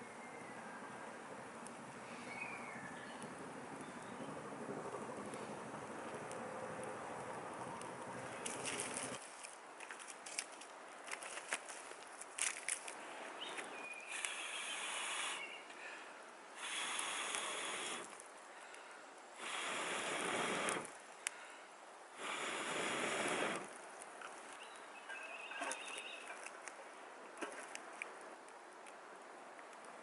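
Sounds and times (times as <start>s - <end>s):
campfire crackling: 1.0s - 30.0s
breath blown into fire: 14.1s - 15.6s, 16.6s - 18.2s, 19.4s - 20.9s, 22.1s - 23.7s.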